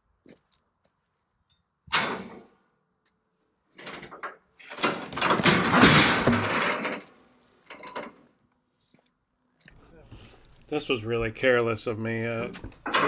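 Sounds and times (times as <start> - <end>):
logs rolling off a trailer: 3.8 - 7.1.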